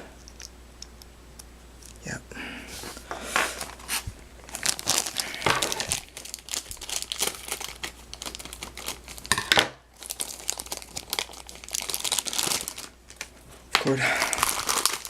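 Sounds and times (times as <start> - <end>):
plastic packaging crinkling: 3.2 - 15.0.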